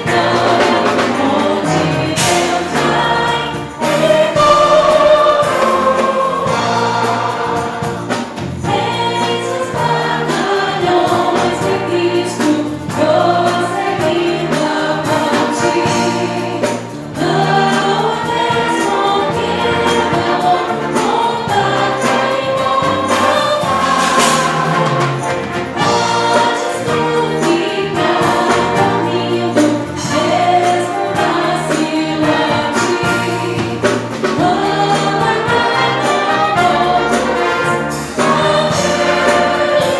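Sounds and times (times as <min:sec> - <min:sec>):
accompanying instruments: 0:00.0 - 0:39.9
choir singing gospel: 0:00.0 - 0:39.9.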